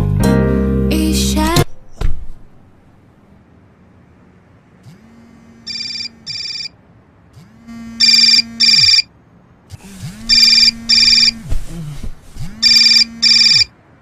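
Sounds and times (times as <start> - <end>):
alarm clock ringing: 5.7 - 6.7, 8.0 - 9.1, 10.3 - 11.3, 12.6 - 13.7.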